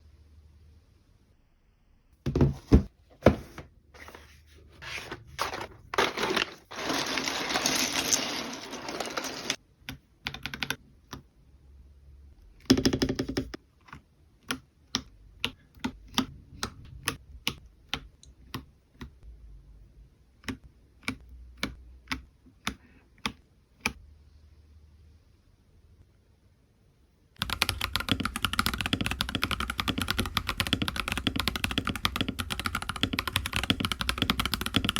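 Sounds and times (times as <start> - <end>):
keyboard typing: 6.0 - 11.3, 12.6 - 19.2, 27.4 - 34.9.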